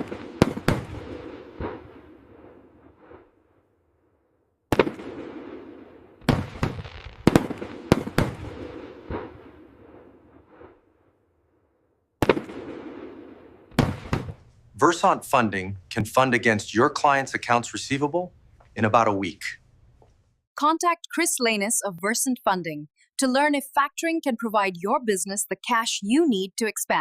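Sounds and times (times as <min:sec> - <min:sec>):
fireworks exploding with echo: 0:00.0 - 0:03.4, 0:04.7 - 0:10.9, 0:12.2 - 0:14.5.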